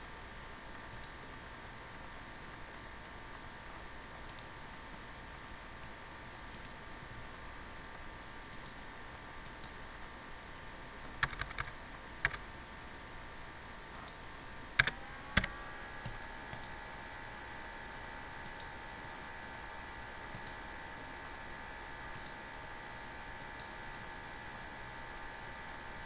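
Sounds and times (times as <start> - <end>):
faint high-pitched electrical whine: 0.0 - 26.0
keyboard keystrokes: 11.2 - 12.4, 14.8 - 15.6
mouse clicks: 11.2 - 12.4, 14.8 - 15.6, 22.2 - 22.4.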